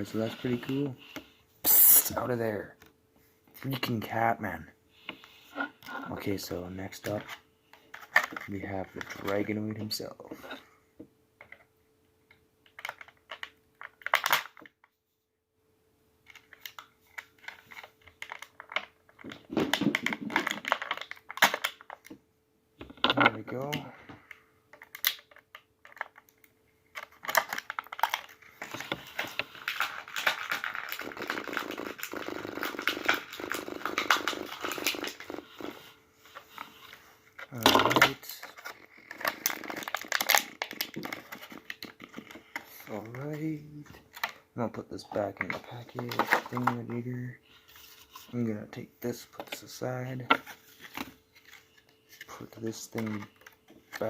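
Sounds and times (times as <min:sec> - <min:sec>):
plastic packaging clicks and crinkles: 0:12.6 - 0:14.8, 0:16.2 - 0:22.2, 0:22.9 - 0:44.4, 0:45.0 - 0:48.4, 0:49.2 - 0:54.0
plastic packaging rustle: 0:26.9 - 0:44.4, 0:45.0 - 0:48.4.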